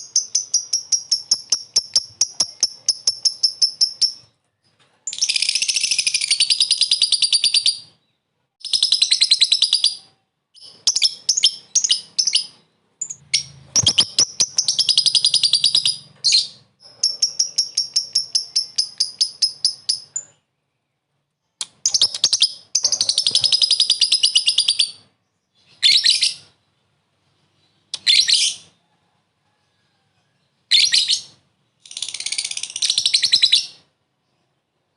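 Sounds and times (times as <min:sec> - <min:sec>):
lovebird chattering trill: 0:00.0 - 0:04.3, 0:08.6 - 0:20.4.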